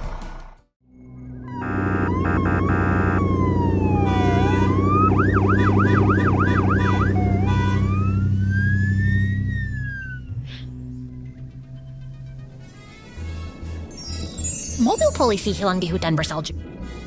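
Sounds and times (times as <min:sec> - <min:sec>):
low engine drone: 0:00.9 - 0:13.0
emergency vehicle siren wailing: 0:01.2 - 0:10.4
short choppy siren tones: 0:01.4 - 0:10.5.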